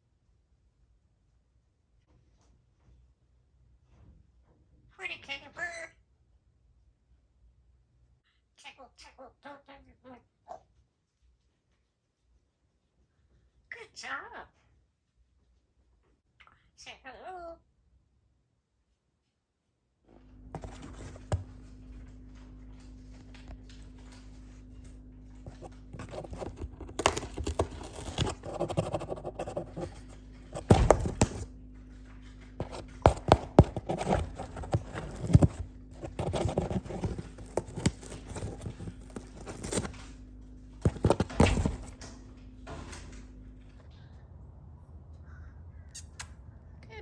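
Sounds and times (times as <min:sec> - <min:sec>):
low hum: 0:20.1 - 0:47.0.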